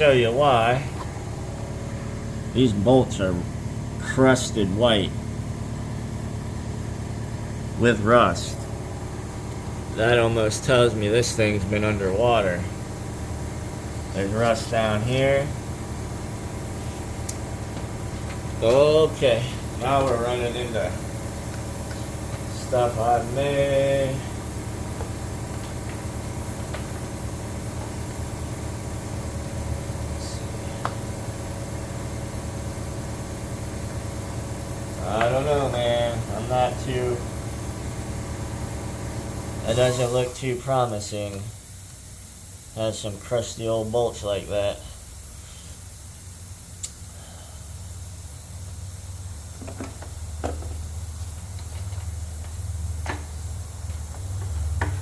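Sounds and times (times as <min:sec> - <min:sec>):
low mechanical drone: 0:00.0 - 0:55.0
steady low hum: 0:00.0 - 0:55.0.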